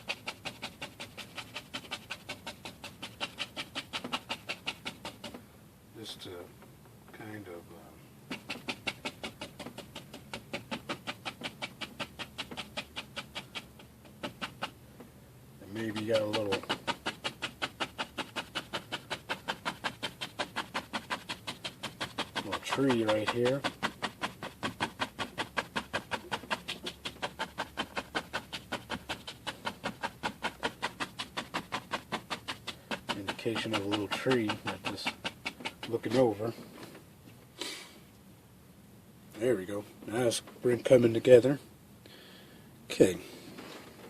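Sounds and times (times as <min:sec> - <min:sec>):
paintbrush dabbing on canvas: 0:00.0 - 0:05.4, 0:08.3 - 0:14.8, 0:15.6 - 0:36.5.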